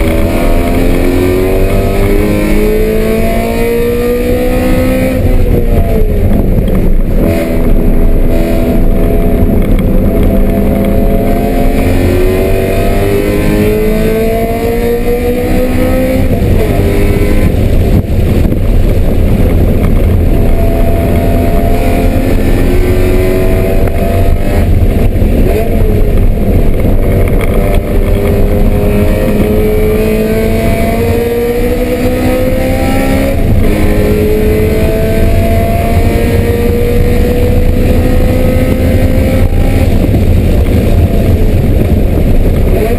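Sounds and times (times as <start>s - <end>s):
race car engine accelerating: 0.0s - 42.9s.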